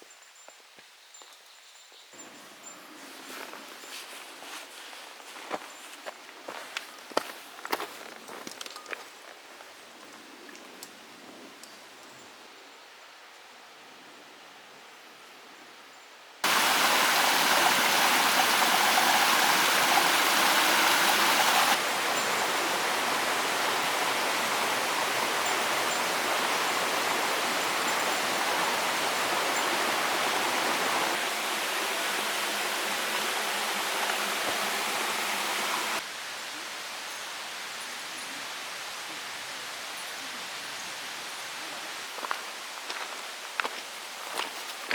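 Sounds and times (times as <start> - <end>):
steady rushing noise: 16.4 - 22.5.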